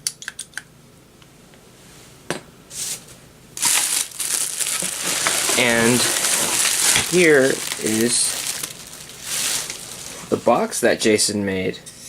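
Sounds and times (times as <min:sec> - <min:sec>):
plastic wrapping crinkling: 0:02.9 - 0:10.8
packaging clicks and knocks: 0:03.6 - 0:10.0.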